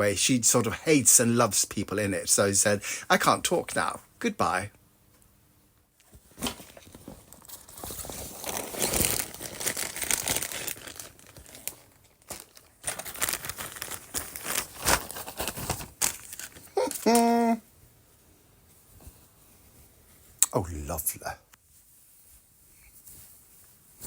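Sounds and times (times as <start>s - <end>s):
packaging crinkling and rustling: 6.1s - 17.3s.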